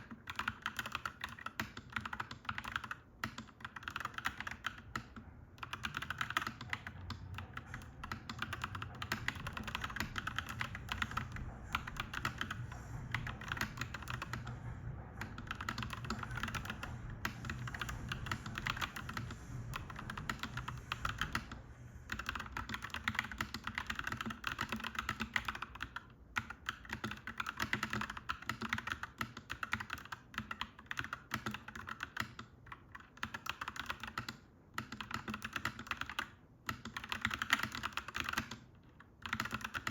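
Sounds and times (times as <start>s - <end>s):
typing on mechanical keyboard: 0.0s - 39.9s
low background rumble: 5.2s - 23.1s.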